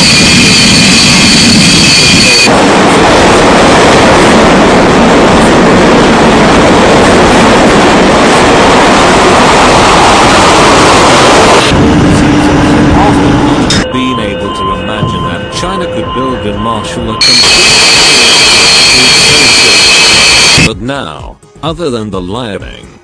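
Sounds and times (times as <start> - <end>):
loud rushing roar: 0.0 - 13.8, 17.2 - 20.7.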